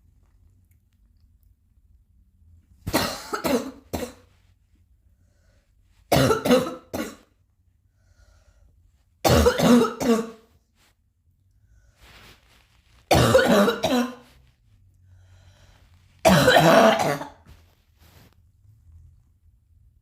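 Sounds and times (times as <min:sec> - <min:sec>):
person coughing: 0:02.9 - 0:04.3, 0:06.1 - 0:07.3, 0:09.3 - 0:10.4, 0:13.1 - 0:14.2, 0:16.2 - 0:17.5
faint breaths: 0:05.0 - 0:06.0, 0:07.8 - 0:09.0, 0:14.9 - 0:16.2.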